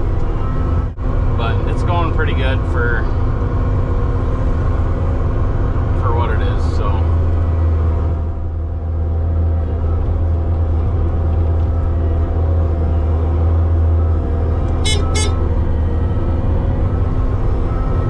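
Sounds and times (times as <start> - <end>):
loader engine droning: 0.0 - 18.0
vehicle horn toots: 14.8 - 15.5.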